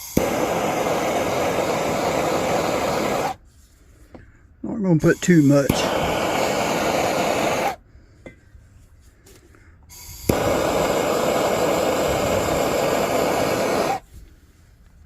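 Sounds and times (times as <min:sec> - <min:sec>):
torch flame hissing: 0:00.0 - 0:03.4, 0:05.0 - 0:07.8, 0:09.9 - 0:14.1.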